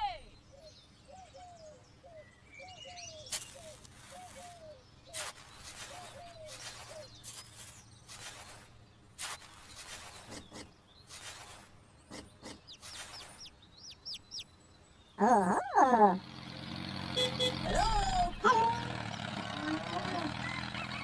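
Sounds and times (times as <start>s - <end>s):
birds chirping: 0.0s - 21.0s
scraping or rustling bursts: 5.2s - 13.5s.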